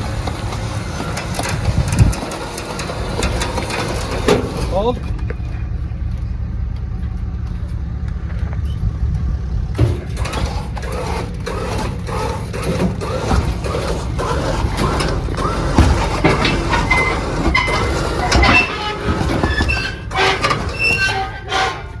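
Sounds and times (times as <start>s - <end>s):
vehicle engine idling: 0.0s - 19.1s
short repeated squeaks: 9.9s - 22.0s.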